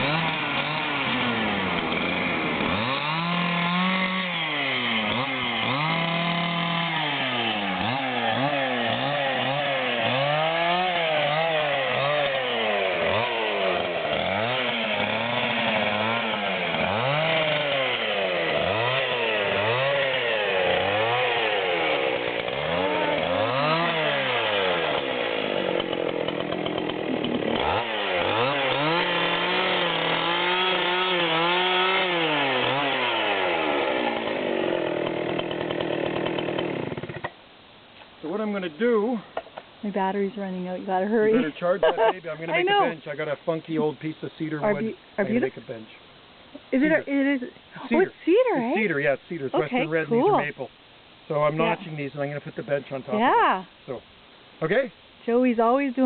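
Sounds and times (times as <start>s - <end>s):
chainsaw cutting wood: 0.0s - 37.4s, 41.3s - 43.0s, 51.5s - 51.8s.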